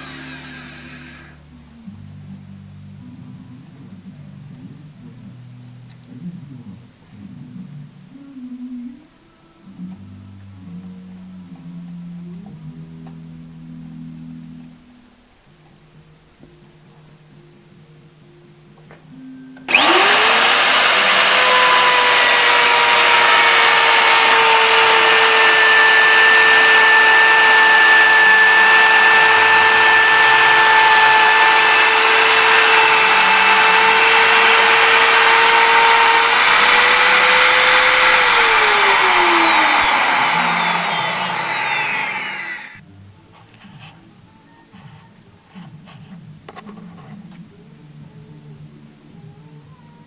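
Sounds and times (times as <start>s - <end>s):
wood router motor whining: 0.0s - 1.4s, 19.7s - 42.8s.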